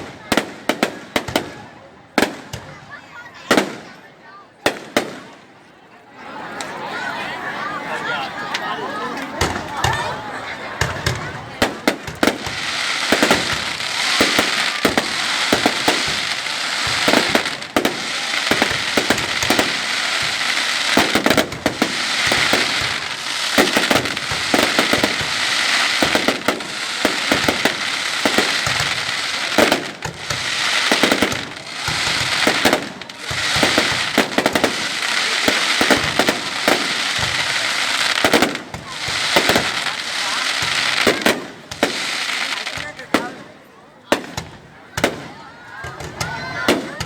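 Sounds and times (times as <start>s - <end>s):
fireworks bangs: 0.0s - 4.0s, 4.6s - 5.5s, 9.2s - 47.0s
fireworks crackling: 0.0s - 4.0s, 4.6s - 5.5s, 8.5s - 47.0s.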